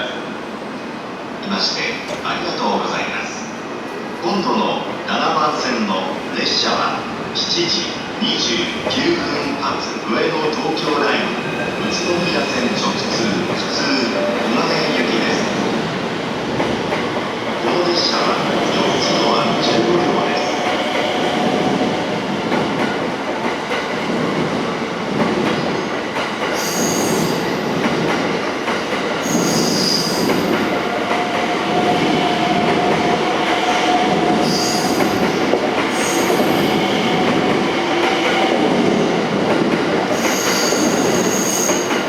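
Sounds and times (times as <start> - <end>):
train rolling rumble: 7.2 - 42.0
train wheel squeals: 26.6 - 27.7, 29.2 - 30.5, 34.4 - 35.3, 36.0 - 37.0, 40.2 - 42.0.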